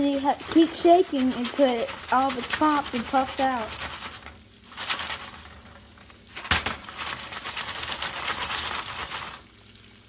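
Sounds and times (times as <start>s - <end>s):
contents sizzling: 0.0s - 10.0s
foil pan rattling on stove: 0.1s - 9.4s.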